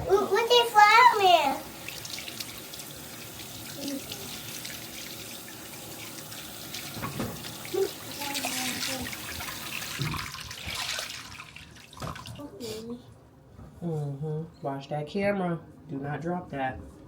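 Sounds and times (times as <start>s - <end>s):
water running from sink tap: 0.2s - 12.4s.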